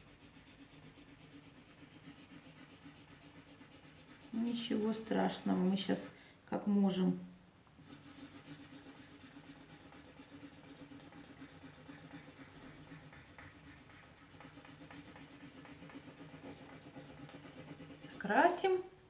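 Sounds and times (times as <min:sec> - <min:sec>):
pencil rubbing on paper: 0:00.0 - 0:05.8, 0:07.8 - 0:18.2.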